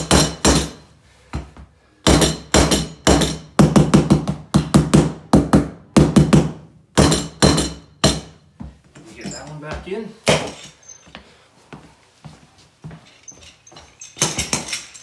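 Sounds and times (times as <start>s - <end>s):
hammer tapping floor planks: 1.4s - 8.8s.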